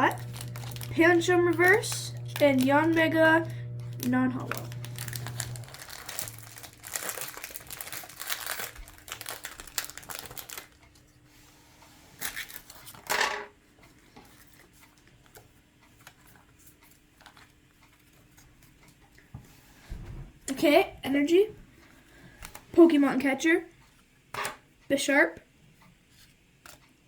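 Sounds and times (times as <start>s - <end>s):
cards rustling: 0.0s - 10.8s, 12.2s - 13.1s
foil wrapper crinkling and tearing: 0.0s - 11.0s, 12.2s - 13.1s.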